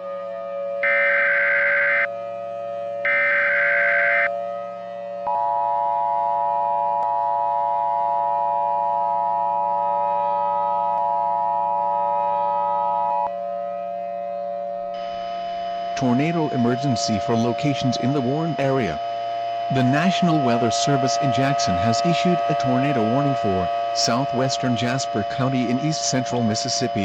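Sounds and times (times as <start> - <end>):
faint low drone: 2.1 - 27.0
two-tone alert signal: 15.0 - 27.0.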